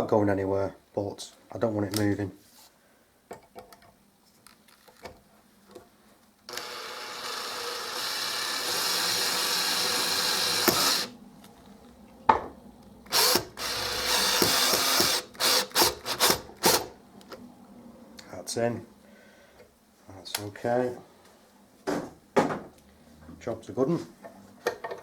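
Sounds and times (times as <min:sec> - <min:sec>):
power drill driving a screw: 0:06.5 - 0:11.1, 0:13.1 - 0:16.9.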